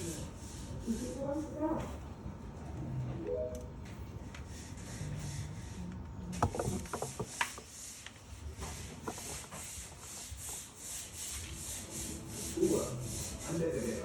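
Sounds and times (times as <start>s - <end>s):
hand scrubbing strokes: 0.0s - 1.8s, 4.4s - 5.9s, 6.8s - 14.0s.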